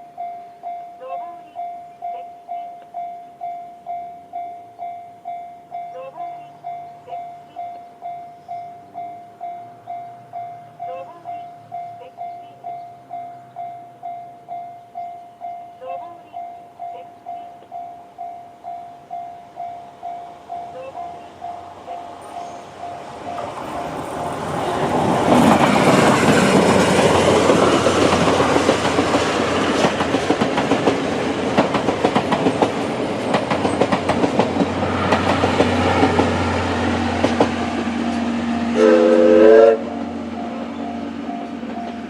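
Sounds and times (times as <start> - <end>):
level crossing warning bell: 0.0 - 30.2, 33.6 - 42.0
steam train rumbling past: 0.0 - 42.0
wheels clicking over rail joints: 5.6 - 38.8
steam whistle blast: 38.7 - 40.1.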